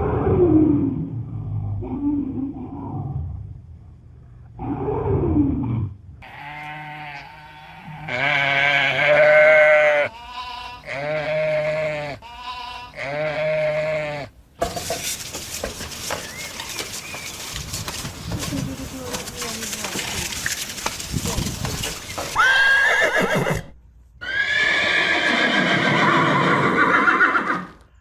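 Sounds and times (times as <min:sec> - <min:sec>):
hissy outdoor background: 0:05.6 - 0:28.0
farm animal calling: 0:06.2 - 0:14.4, 0:15.6 - 0:27.8.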